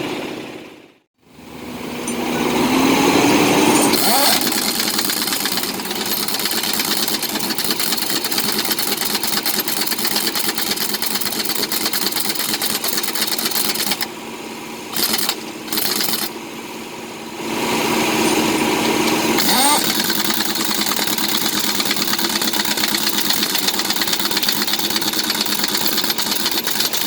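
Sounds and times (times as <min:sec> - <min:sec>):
fast metallic mechanical rattle: 0:03.6 - 0:14.2, 0:14.9 - 0:16.4, 0:18.1 - 0:27.0.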